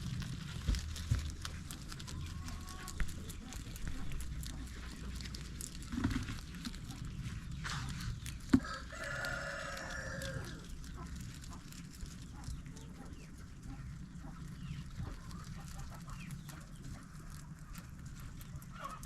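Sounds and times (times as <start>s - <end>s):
rooster crowing: 8.6s - 10.7s.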